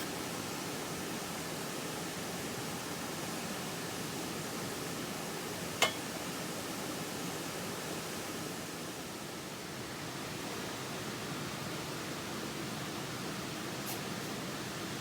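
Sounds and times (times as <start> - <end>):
steady background hiss: 0.0 - 10.1.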